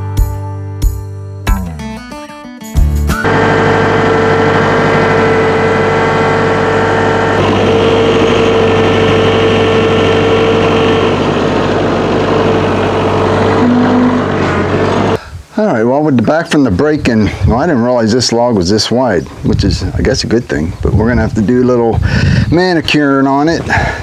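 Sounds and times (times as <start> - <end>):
engine idling: 3.2 - 15.5.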